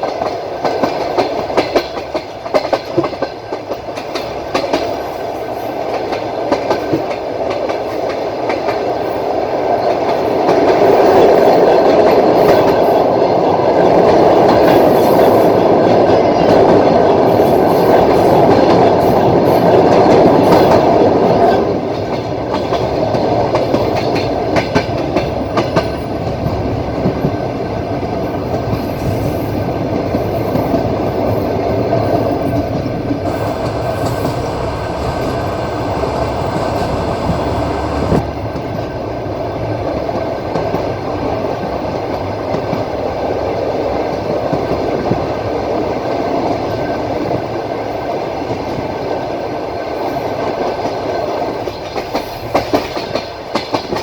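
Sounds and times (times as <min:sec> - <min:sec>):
train wheels clacking over rail joints: 0:00.0 - 0:09.1, 0:09.8 - 0:27.4, 0:28.4 - 0:38.8, 0:50.4 - 0:54.0
train rolling rumble: 0:00.0 - 0:54.0.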